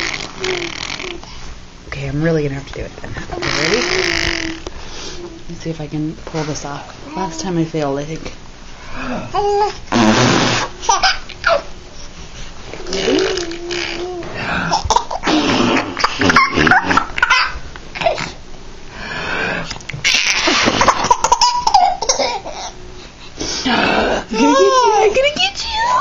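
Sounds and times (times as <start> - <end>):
baby laughing: 0.0 - 1.2, 3.3 - 4.7, 10.8 - 11.7, 12.8 - 18.4, 20.0 - 22.8
baby held vocal sound: 0.0 - 1.3, 3.3 - 5.4, 12.8 - 15.1.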